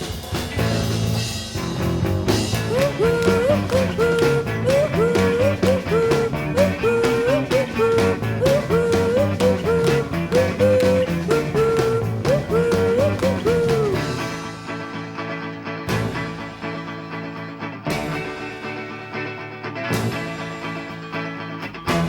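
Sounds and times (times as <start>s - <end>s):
rock music with sliding lead: 0.0s - 2.7s, 14.0s - 22.0s
steady drum beat: 0.0s - 14.4s.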